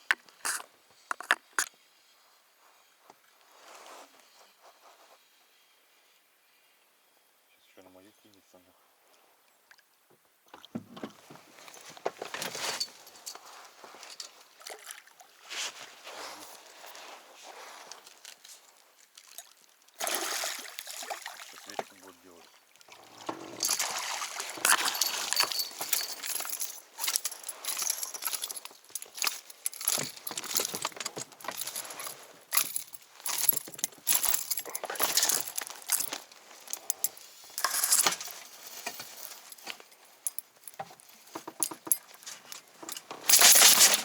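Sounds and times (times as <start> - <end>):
clicking and clinking: 24.6 - 36.2.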